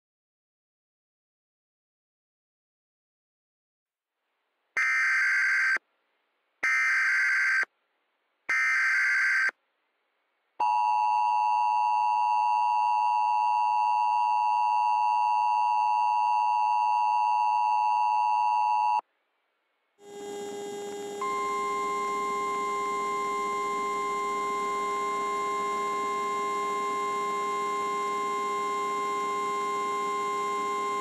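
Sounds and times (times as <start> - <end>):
two-tone attention signal: 20.0 - 31.0.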